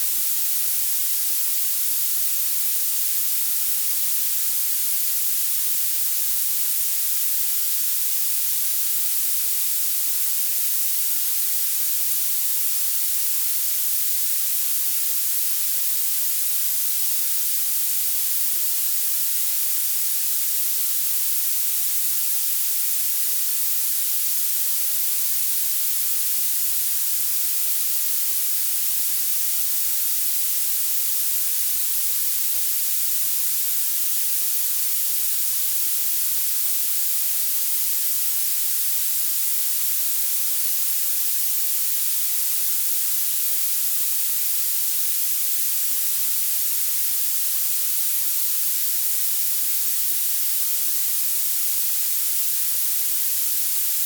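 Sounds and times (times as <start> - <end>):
high-pitched steady hiss: 0.0 - 54.0.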